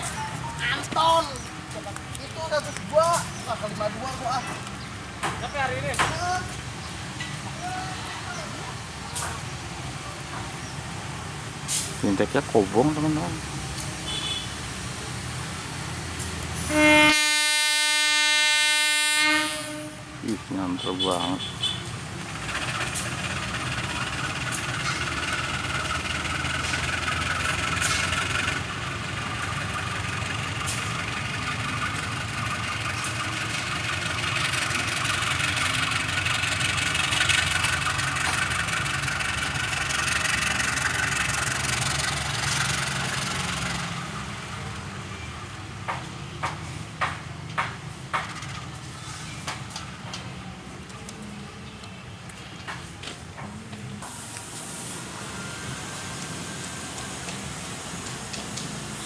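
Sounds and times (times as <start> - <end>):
train wheels on rail: 0.0 - 59.0.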